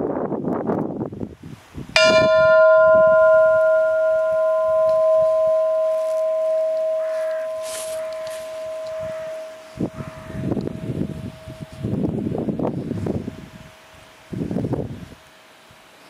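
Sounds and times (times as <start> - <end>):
bell ringing: 2.0 - 11.8.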